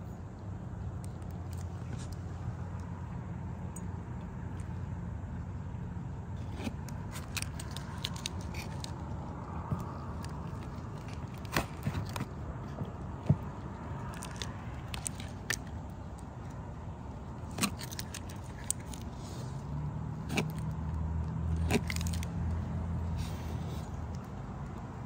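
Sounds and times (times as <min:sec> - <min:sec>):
low engine hum: 0:00.0 - 0:25.0.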